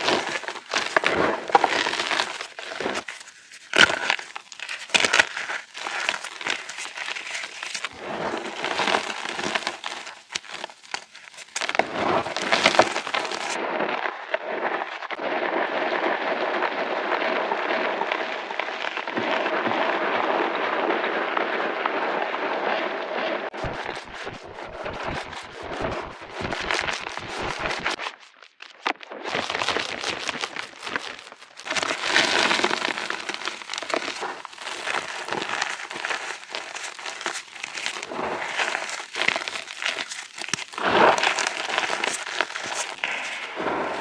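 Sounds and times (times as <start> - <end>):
chalk crunching and snapping: 0.0 - 13.6, 23.5 - 44.0
dense dull crackling: 23.5 - 44.0.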